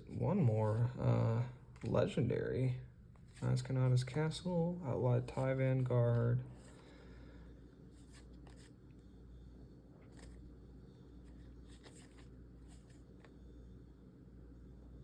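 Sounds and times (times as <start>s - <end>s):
low room hum: 0.0s - 15.0s
trading cards and wrappers rustling: 7.9s - 8.9s, 10.0s - 13.4s.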